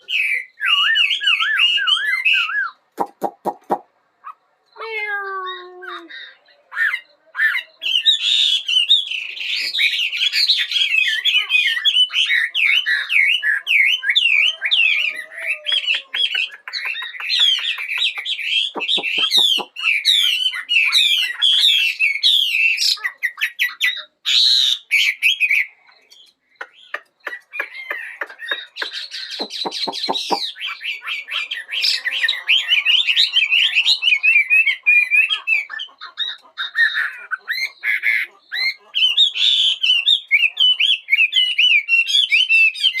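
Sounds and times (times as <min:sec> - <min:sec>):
songbird singing whistled phrases: 0:00.0 - 0:03.8, 0:15.7 - 0:31.4, 0:38.7 - 0:43.0.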